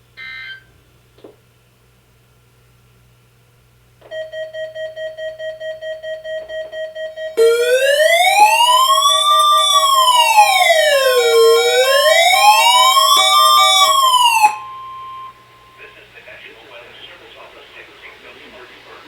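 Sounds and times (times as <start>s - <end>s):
electronic siren wailing: 7.4s - 15.5s
rapidly pulsing beep: 7.4s - 16.0s.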